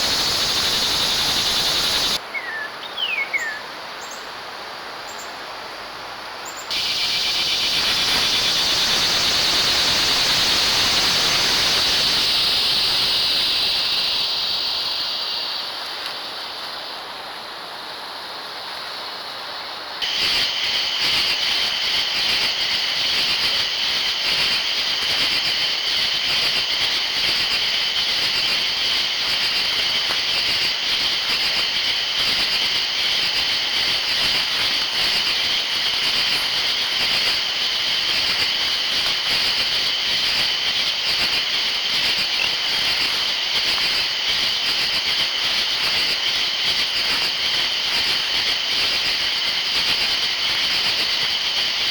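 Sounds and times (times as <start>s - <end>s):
insects trilling: 0.0s - 4.3s, 6.4s - 51.9s.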